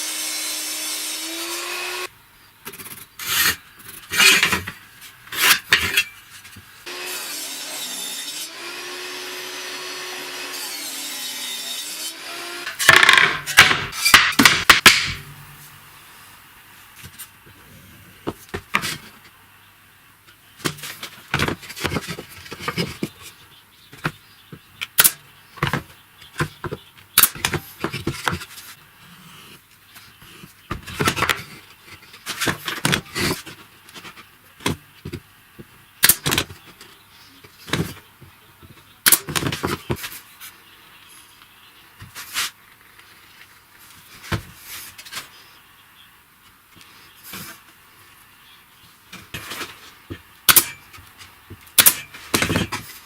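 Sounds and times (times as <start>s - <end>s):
hard objects clicking and knocking: 12.7s - 15.3s.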